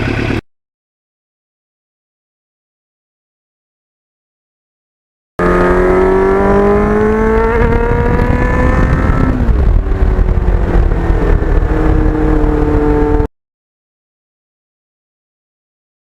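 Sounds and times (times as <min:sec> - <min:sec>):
motorcycle engine accelerating: 0:00.0 - 0:00.4, 0:05.4 - 0:13.3.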